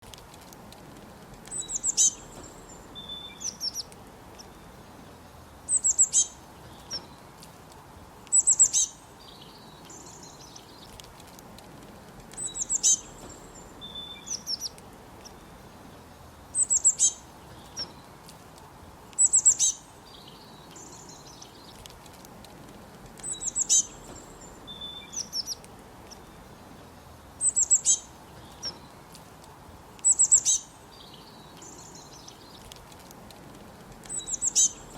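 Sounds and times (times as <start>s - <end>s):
faint background hiss: 0.0s - 34.9s
bird singing high descending notes: 34.1s - 34.9s.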